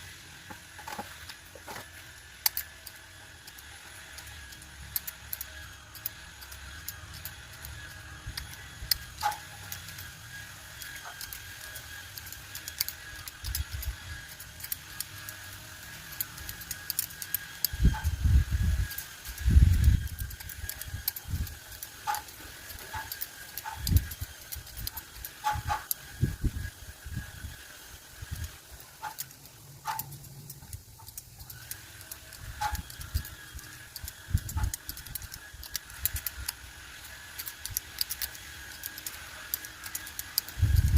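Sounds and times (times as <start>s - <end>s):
pruning shears snipping: 0.6s - 27.2s, 28.2s - 40.9s.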